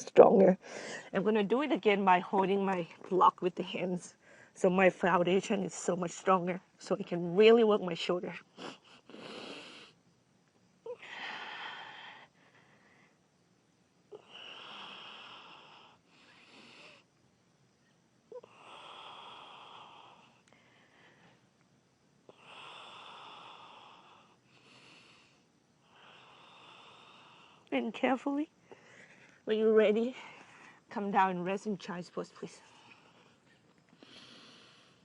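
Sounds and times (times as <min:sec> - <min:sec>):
woman breathing heavily: 0:00.6 - 0:01.2, 0:10.9 - 0:13.2, 0:18.4 - 0:21.5, 0:22.3 - 0:27.7, 0:28.6 - 0:29.5, 0:30.1 - 0:30.9, 0:32.6 - 0:35.0.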